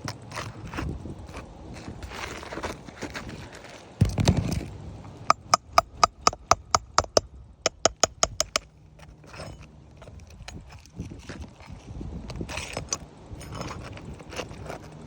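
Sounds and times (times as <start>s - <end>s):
ringing hammer taps on metal: 5.3s - 8.7s.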